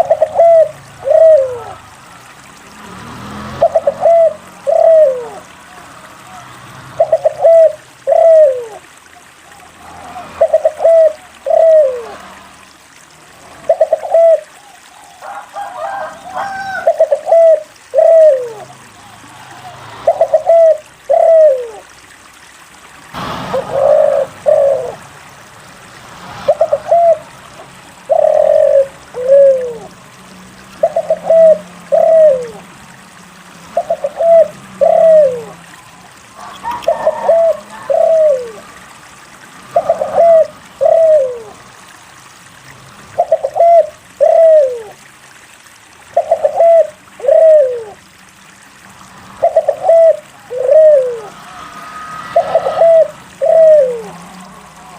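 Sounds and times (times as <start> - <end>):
dove cooing: 0.0 - 1.9, 3.6 - 6.4, 7.0 - 12.2, 13.5 - 21.9, 23.5 - 25.0, 26.4 - 30.0, 30.8 - 32.7, 33.7 - 38.8, 39.7 - 41.6, 43.2 - 45.1, 46.1 - 48.0, 49.3 - 54.9.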